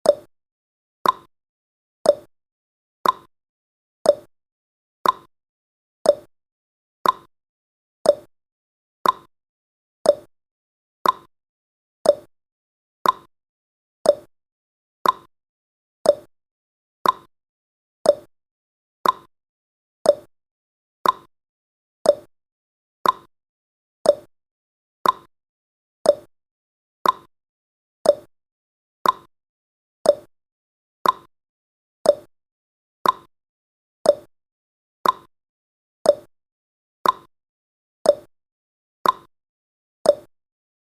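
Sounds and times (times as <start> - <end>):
clock tick-tock: 0.0 - 0.3, 1.0 - 1.3, 2.0 - 2.3, 3.0 - 3.3, 4.0 - 4.3, 5.0 - 5.3, 6.0 - 6.3, 7.0 - 7.3, 8.0 - 8.3, 9.0 - 9.3, 10.0 - 10.3, 11.0 - 11.3, 12.0 - 12.3, 13.0 - 13.3, 14.0 - 14.3, 15.0 - 15.3, 16.0 - 16.3, 17.0 - 17.3, 18.0 - 18.3, 19.0 - 19.3, 20.0 - 20.3, 21.0 - 21.3, 22.0 - 22.3, 23.0 - 23.3, 24.0 - 24.3, 25.0 - 25.3, 26.0 - 26.3, 27.0 - 27.3, 28.0 - 28.3, 29.0 - 29.3, 30.0 - 30.3, 31.0 - 31.3, 32.0 - 32.3, 33.0 - 33.3, 34.0 - 34.3, 35.0 - 35.3, 36.0 - 36.3, 37.0 - 37.3, 38.0 - 38.3, 39.0 - 39.3, 40.0 - 40.4.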